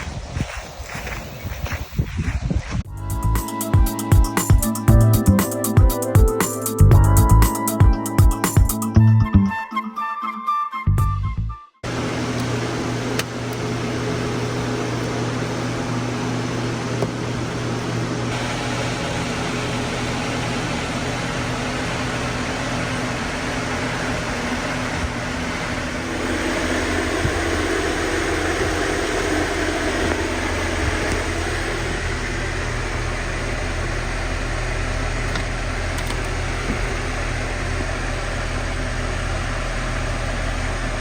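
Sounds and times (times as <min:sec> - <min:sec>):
electric fans whirring: 0:11.8 - 0:41.0.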